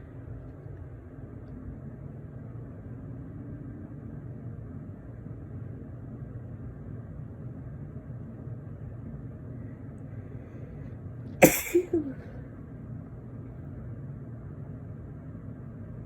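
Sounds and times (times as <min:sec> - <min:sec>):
steady low hum: 0:00.0 - 0:16.0
person sneezing: 0:11.4 - 0:12.4.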